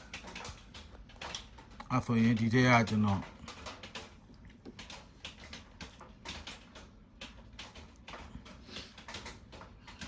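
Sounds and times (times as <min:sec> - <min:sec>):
faint clicking and tapping: 0:00.0 - 0:10.0.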